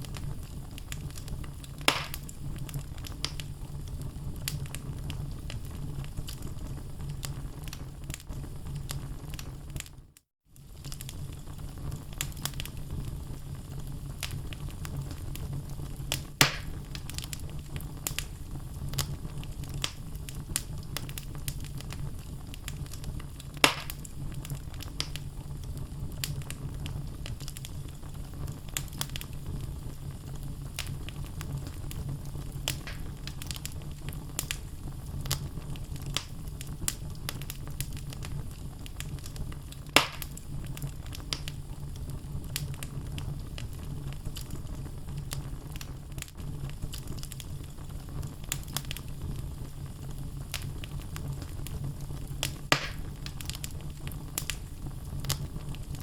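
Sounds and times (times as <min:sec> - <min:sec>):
logs crackling: 0:00.0 - 0:03.5, 0:16.1 - 0:25.2, 0:30.8 - 0:41.6, 0:52.4 - 0:56.0
fire rumbling in a fireplace: 0:00.0 - 0:56.0
loud wood pops: 0:01.9 - 0:02.3, 0:16.4 - 0:16.7, 0:23.6 - 0:24.0, 0:32.7 - 0:33.1, 0:40.0 - 0:40.3, 0:52.7 - 0:53.1.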